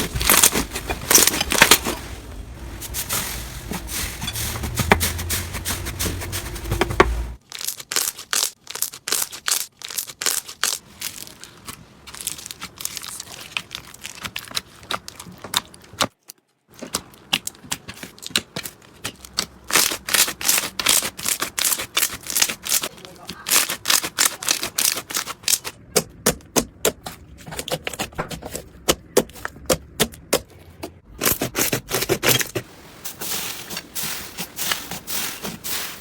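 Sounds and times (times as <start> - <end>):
slime crackling and popping: 7.4 - 16.4.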